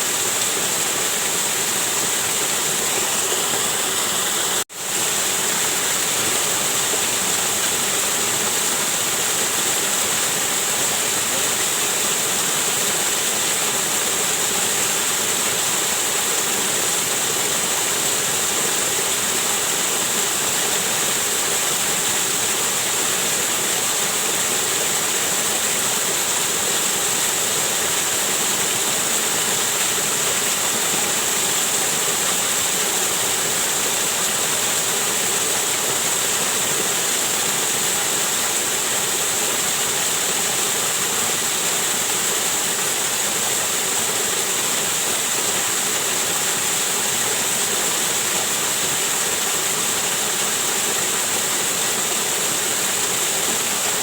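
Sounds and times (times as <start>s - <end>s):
waterfall rushing: 0.0s - 54.0s.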